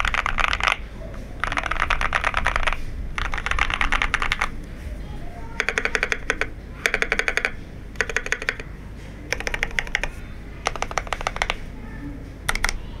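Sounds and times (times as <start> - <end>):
rapid keyboard typing: 0.0 - 0.8, 1.4 - 4.6, 5.5 - 8.7, 9.3 - 11.7, 12.5 - 12.8.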